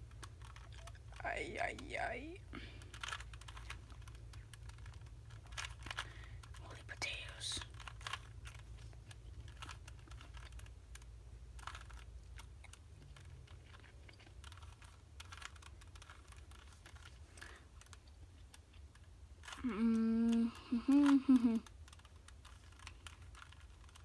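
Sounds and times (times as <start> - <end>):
puzzle cube clicking: 0.0 - 24.0.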